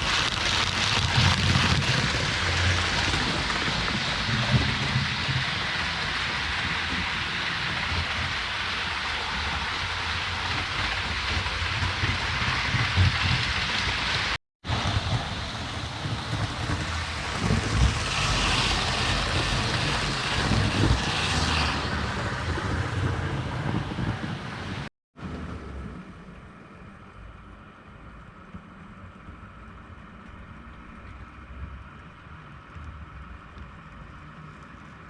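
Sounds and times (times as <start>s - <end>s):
model trains rumbling: 0.0s - 29.5s.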